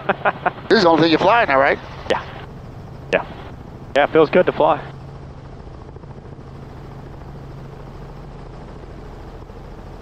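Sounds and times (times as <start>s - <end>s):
helicopter engine and rotor droning: 0.0s - 10.0s.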